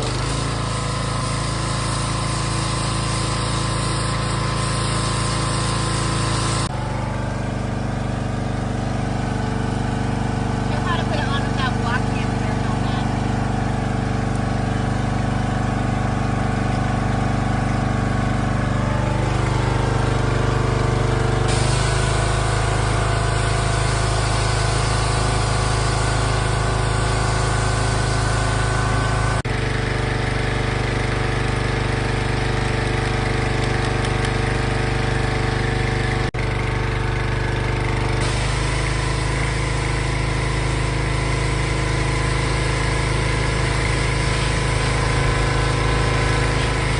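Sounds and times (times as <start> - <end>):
pressure washer engine running: 0.0 - 46.9
rushing hiss of spray: 0.2 - 6.7, 21.4 - 29.4, 38.2 - 46.9.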